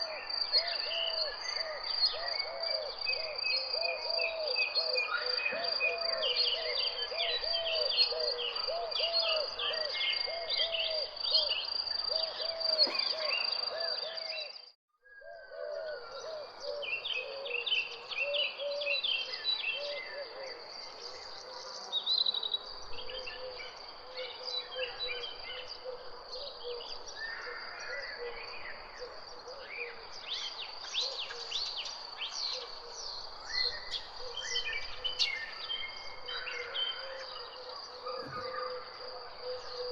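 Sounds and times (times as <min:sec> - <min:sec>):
birds chirping and singing: 0:00.0 - 0:39.9
lower bird call: 0:32.5 - 0:39.9.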